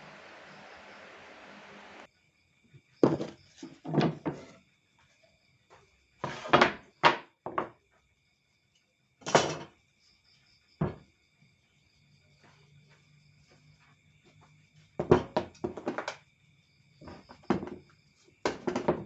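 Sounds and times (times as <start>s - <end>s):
faint high-pitched whine: 0.0s - 2.9s
clunks and knocks: 3.0s - 4.6s, 15.0s - 16.2s, 17.0s - 19.0s.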